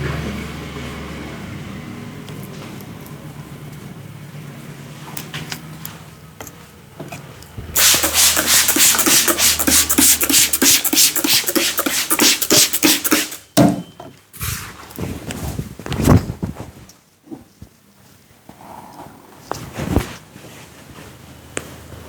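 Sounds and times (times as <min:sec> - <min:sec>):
hands rapidly patting and slapping: 0:07.8 - 0:13.5
hands rubbing: 0:07.8 - 0:13.5.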